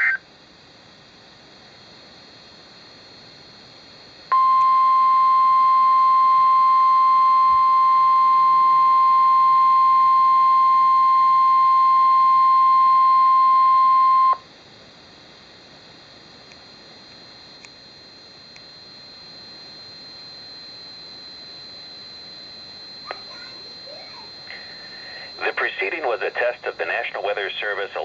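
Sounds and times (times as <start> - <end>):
loud steady alarm beep: 2.9 - 14.4, 16.7 - 27.3
faint radio hiss: 23.0 - 28.0.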